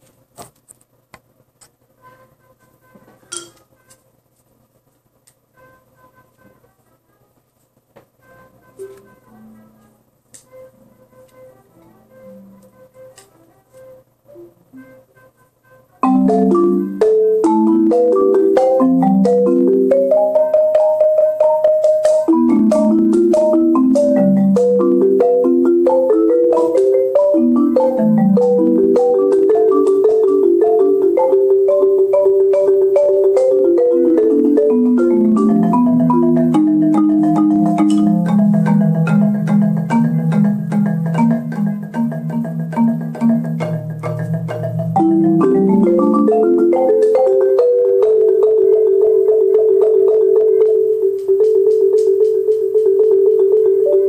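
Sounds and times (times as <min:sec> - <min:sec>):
solo marimba: 0:16.0 - 0:54.0.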